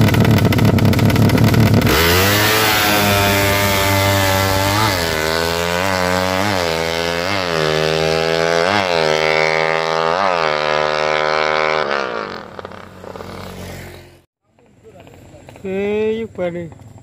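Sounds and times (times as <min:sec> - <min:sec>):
racing motorcycle engine revving: 0:00.0 - 0:14.3.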